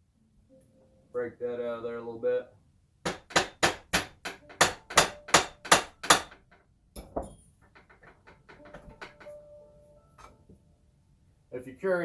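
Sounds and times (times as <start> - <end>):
hammer striking metal part: 3.0 - 9.4.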